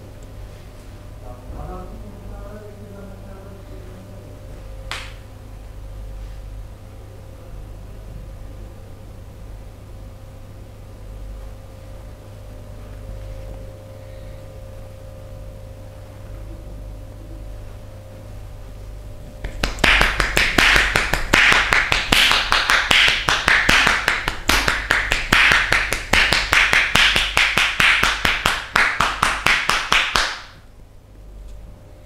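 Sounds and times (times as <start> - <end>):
hands clapping on body in massage: 4.9 - 5.2, 19.4 - 30.6.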